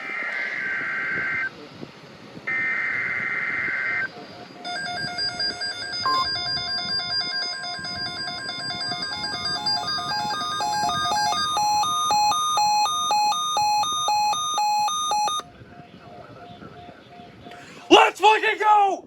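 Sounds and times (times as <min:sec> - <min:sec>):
long steady alarm tone: 0:02.5 - 0:15.5
alarms beeping in two-note warble: 0:04.6 - 0:15.4
second warbling alarm: 0:04.7 - 0:15.4.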